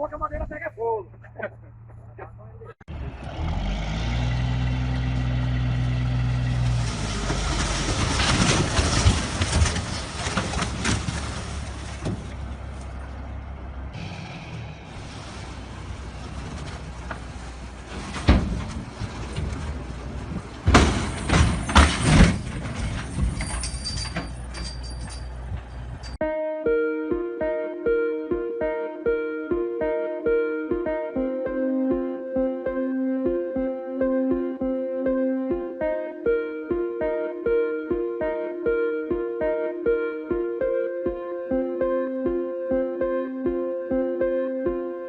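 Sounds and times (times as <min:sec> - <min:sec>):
heavy vehicle engine running: 0:02.9 - 0:23.2, 0:24.3 - 0:26.2
rough rumbling with sharp cracks: 0:06.5 - 0:12.9, 0:14.9 - 0:23.3
plucked guitar music: 0:26.2 - 0:45.0.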